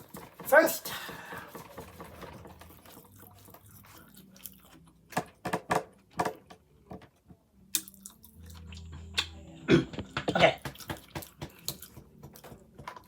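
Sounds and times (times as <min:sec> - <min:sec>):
crunchy chewing: 0:00.9 - 0:05.1, 0:07.6 - 0:09.4, 0:10.5 - 0:13.0.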